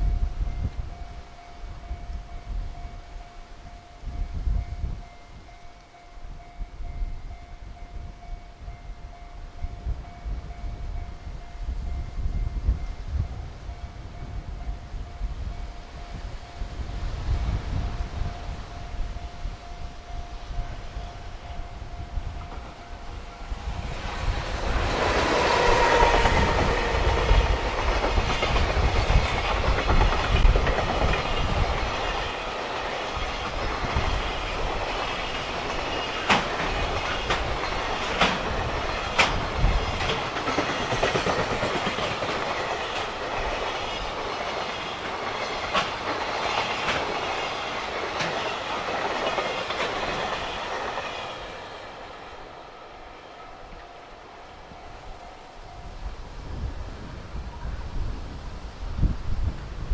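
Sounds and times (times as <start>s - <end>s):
freight train rumbling past: 0.0s - 59.9s
train wheels clacking over rail joints: 22.4s - 52.4s.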